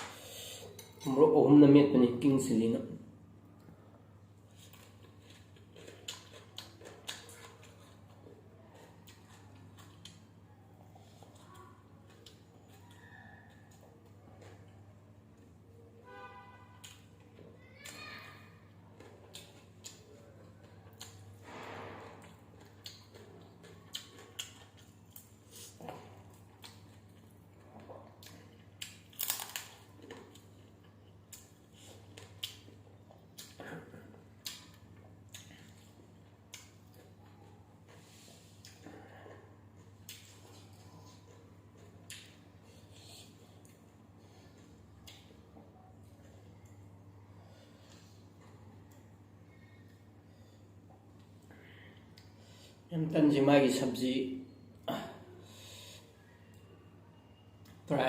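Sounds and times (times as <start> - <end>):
quiet chewing with mouth clicks: 4.4 - 15.7, 18.7 - 21.4, 22.2 - 52.9.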